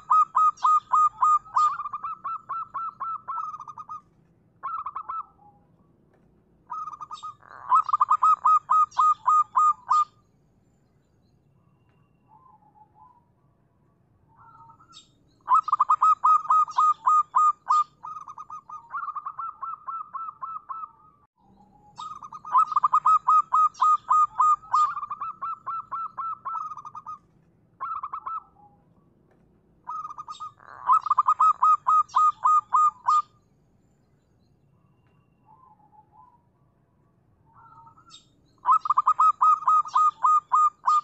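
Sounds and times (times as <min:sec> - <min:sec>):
dove cooing: 0:00.0 - 0:05.6, 0:06.7 - 0:10.2, 0:14.4 - 0:28.6, 0:29.9 - 0:33.3, 0:37.6 - 0:41.0.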